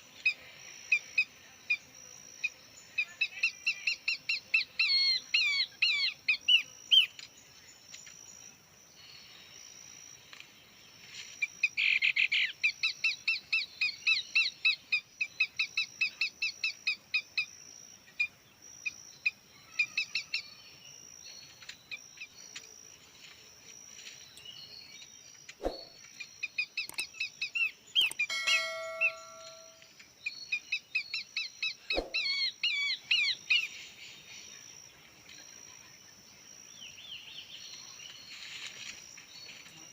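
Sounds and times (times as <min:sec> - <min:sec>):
small birds chirping: 0:00.1 - 0:39.9
brief ringing tone: 0:28.1 - 0:29.8.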